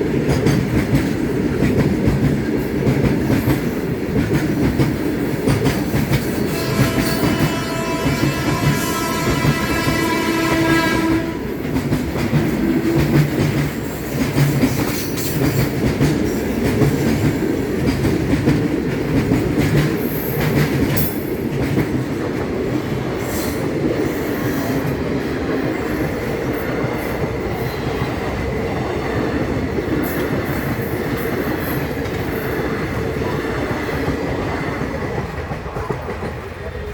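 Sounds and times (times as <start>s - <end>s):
train rolling past: 0.0s - 36.9s
locomotive horn blaring: 6.5s - 11.6s.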